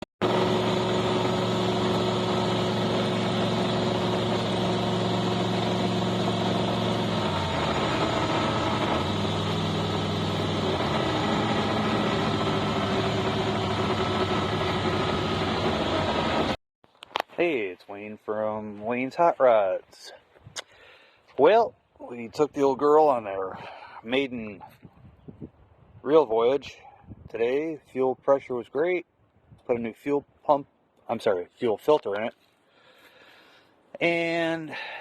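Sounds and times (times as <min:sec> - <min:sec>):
car engine idling: 0:00.2 - 0:16.6.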